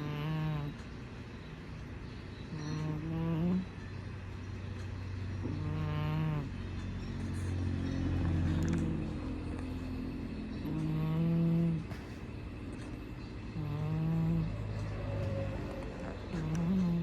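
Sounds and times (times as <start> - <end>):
cat snoring: 0.0 - 0.8, 2.6 - 3.7, 5.4 - 6.6, 10.6 - 12.2, 13.6 - 14.6, 15.6 - 17.0
steady low hum: 0.0 - 17.0.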